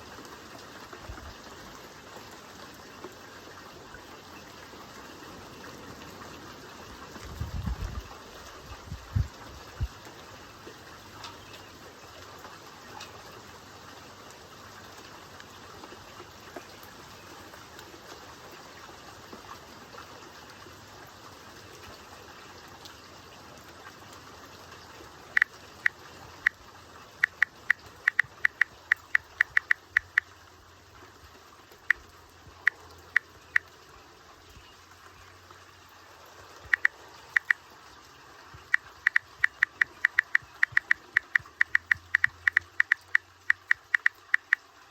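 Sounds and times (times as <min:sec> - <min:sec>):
rain hiss: 0:00.0 - 0:44.9
sharp high ticks: 0:25.3 - 0:26.6, 0:27.2 - 0:30.3, 0:31.8 - 0:33.7, 0:36.6 - 0:37.6, 0:38.6 - 0:44.7.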